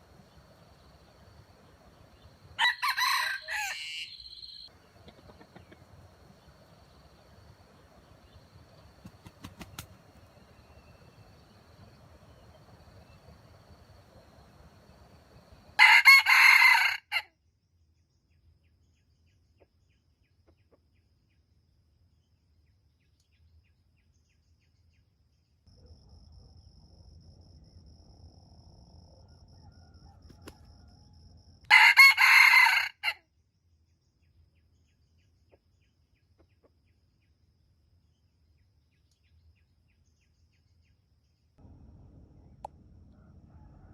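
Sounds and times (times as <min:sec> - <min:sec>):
rooster crowing: 0:02.1 - 0:05.8, 0:15.3 - 0:17.3, 0:29.5 - 0:33.2, 0:43.1 - 0:43.9.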